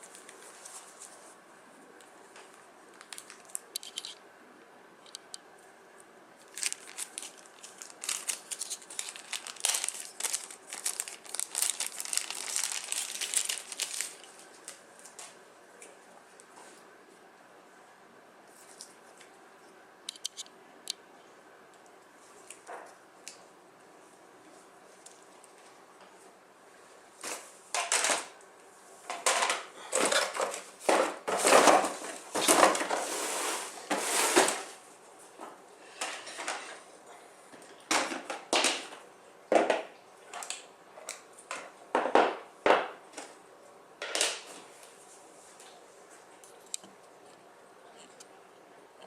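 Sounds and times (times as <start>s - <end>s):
packaging rustles and crinkles: 2.4s - 4.2s, 6.4s - 15.4s.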